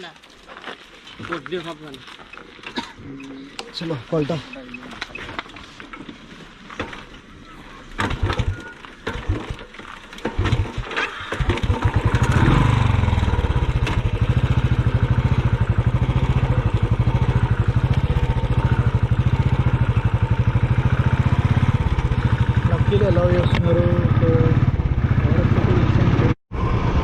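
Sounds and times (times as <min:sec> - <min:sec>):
motorcycle engine starting and running: 0:07.8 - 0:27.0.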